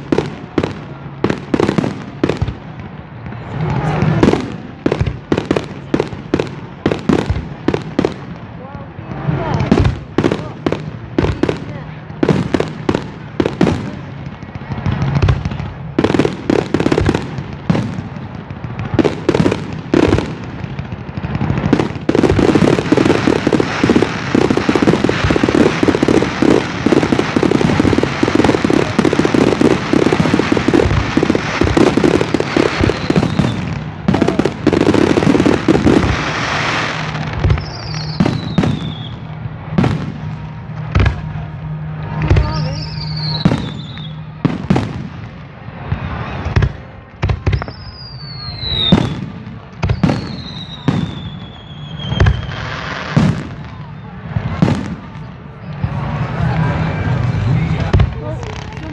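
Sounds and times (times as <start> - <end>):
fireworks bangs: 0.0 - 58.9
rapid fireworks crackling: 0.0 - 58.9
high falling whistles: 37.6 - 39.1.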